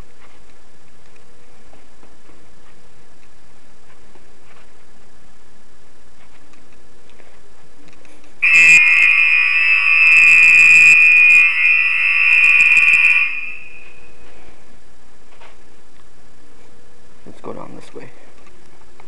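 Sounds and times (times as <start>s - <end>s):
fire alarm high-pitched tone: 8.4s - 14.2s.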